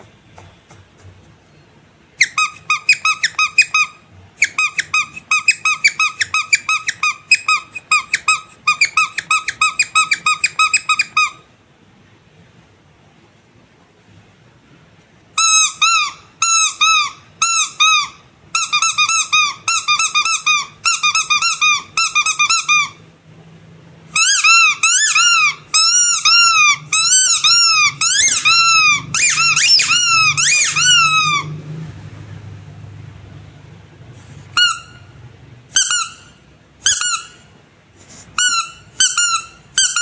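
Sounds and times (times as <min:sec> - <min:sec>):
squeaky rubber toys squeaking: 0:02.2 - 0:11.5, 0:15.4 - 0:23.0, 0:24.1 - 0:31.6, 0:34.4 - 0:37.5, 0:38.3 - 0:40.0.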